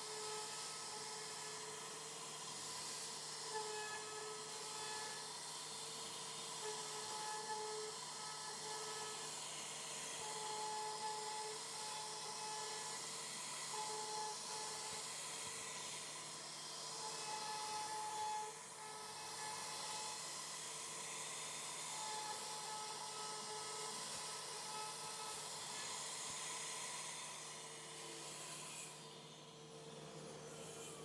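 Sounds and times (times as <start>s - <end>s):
cnc router hissing: 0.0s - 31.0s.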